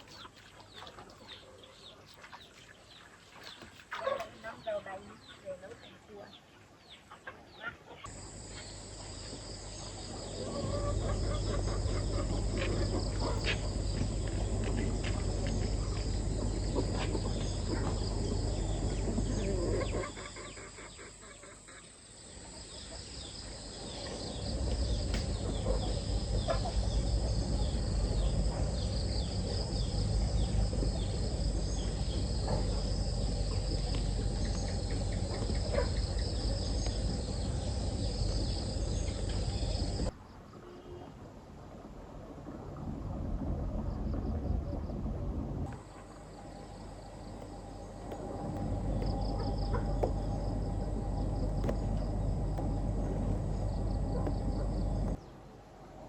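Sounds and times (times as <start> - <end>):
insects chirring: 8.1 - 40.1, 45.7 - 55.2
chickens clucking: 10.2 - 14.2, 16.4 - 21.9, 25.1 - 27.2, 48.6 - 50.4
loud low rumble: 23.6 - 40.1, 42.3 - 55.2.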